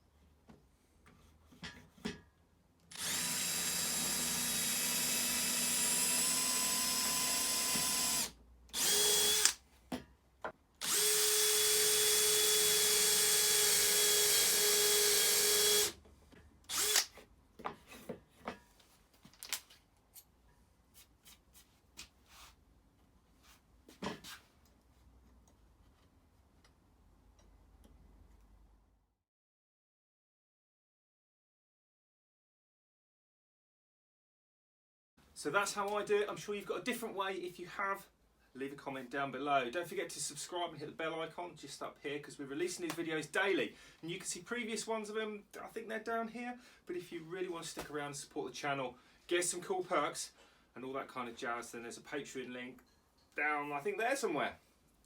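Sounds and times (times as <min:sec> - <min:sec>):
power drill boring into wood: 0:02.9 - 0:09.6, 0:10.8 - 0:16.0, 0:16.7 - 0:17.1.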